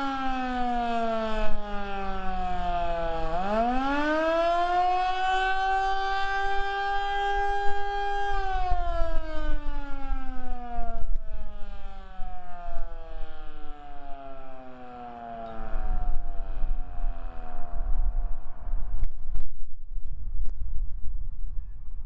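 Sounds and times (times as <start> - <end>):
outdoor warning siren wailing: 0.0 - 19.1
wind buffeting microphone: 6.4 - 14.6, 15.5 - 22.0.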